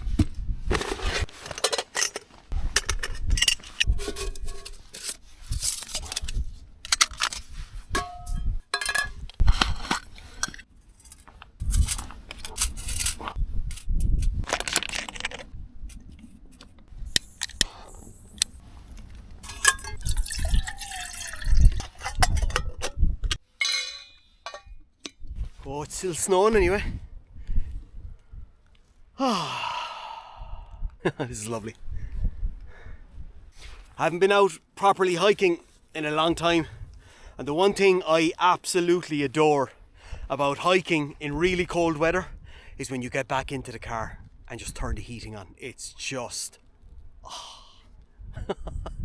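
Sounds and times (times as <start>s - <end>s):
liquid pouring: 19.4s - 22.1s
metal cookware clinking: 19.4s - 22.9s, 23.6s - 24.7s.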